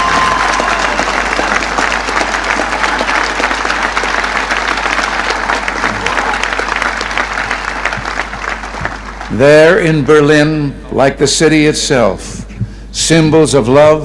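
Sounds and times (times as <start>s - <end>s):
crowd applauding: 0.0s - 10.6s.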